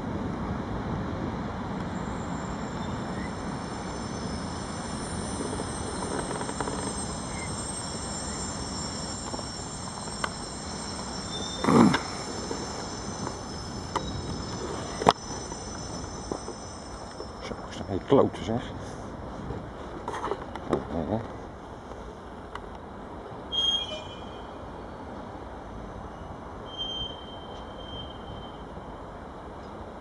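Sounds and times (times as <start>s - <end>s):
high-pitched whines: 1.6s - 19.2s.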